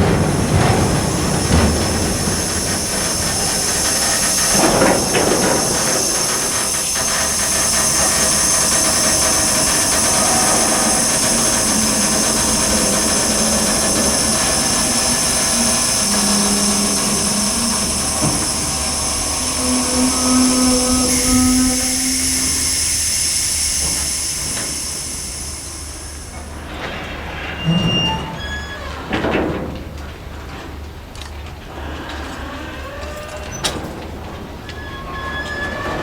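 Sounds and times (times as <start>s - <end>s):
train running past: 0.0s - 28.1s
high-pitched wheel squeal: 2.2s - 24.8s, 27.5s - 29.0s, 34.6s - 36.0s.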